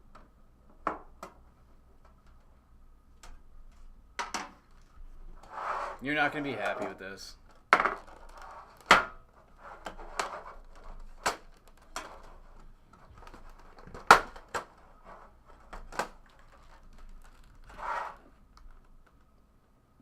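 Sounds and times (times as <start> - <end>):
packaging rustling: 9.8 - 19.2.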